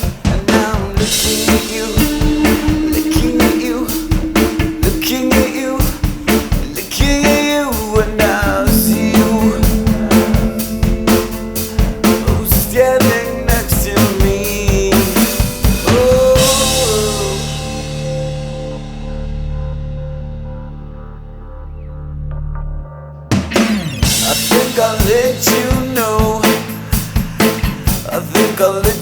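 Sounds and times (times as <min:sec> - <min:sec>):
drum-kit beat: 0:00.0 - 0:18.1, 0:23.5 - 0:29.0
rock song: 0:00.0 - 0:19.7, 0:23.3 - 0:29.0
sliding melodic lead line: 0:01.0 - 0:19.7
cymbal wash ringing: 0:01.0 - 0:19.8.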